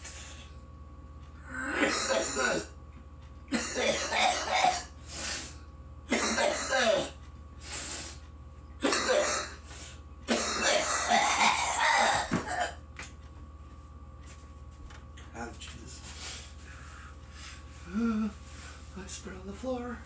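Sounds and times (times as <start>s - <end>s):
person coughing hard: 1.5s - 2.8s, 3.5s - 5.0s, 6.1s - 7.2s, 8.8s - 9.6s, 10.3s - 12.8s.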